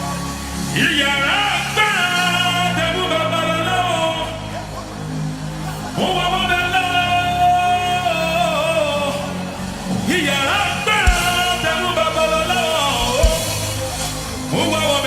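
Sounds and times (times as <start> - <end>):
person singing gospel: 0.0 - 15.0
sustained low accompaniment: 0.0 - 15.0
drum thuds: 11.1 - 11.6, 13.0 - 13.9.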